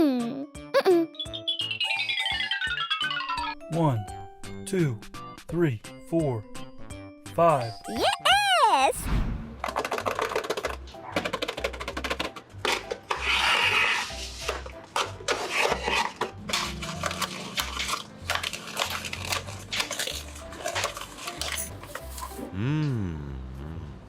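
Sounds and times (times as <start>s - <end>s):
stiff paper crinkling: 15.3s - 22.5s.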